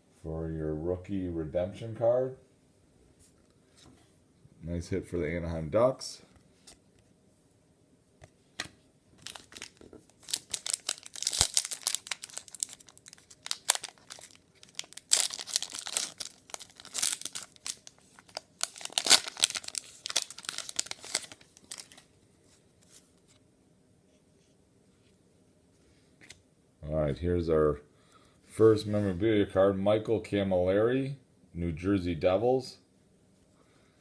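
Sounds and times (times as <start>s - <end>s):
wrapper tearing and crinkling: 9.2s - 22.1s.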